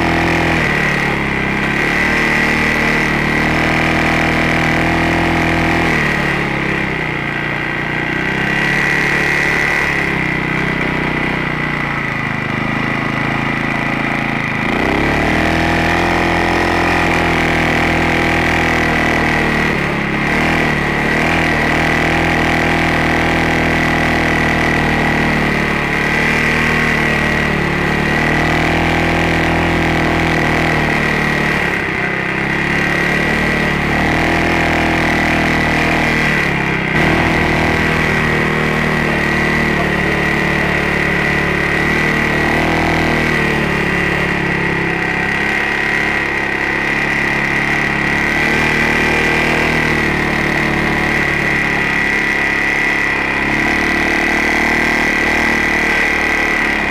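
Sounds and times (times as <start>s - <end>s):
atv engine running: 0.0s - 56.9s
steady high whine: 26.9s - 56.9s.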